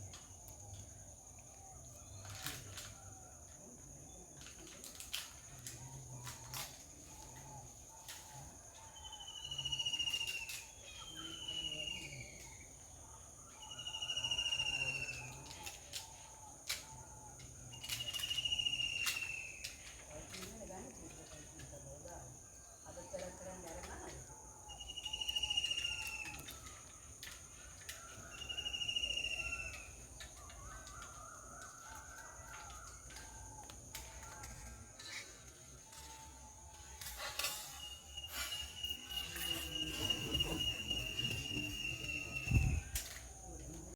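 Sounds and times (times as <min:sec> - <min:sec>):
bird whistle gliding down: 0:18.0 - 0:19.5, 0:24.8 - 0:26.4, 0:28.4 - 0:29.9, 0:37.5 - 0:43.0
high-pitched insect drone: 0:35.0 - 0:43.9.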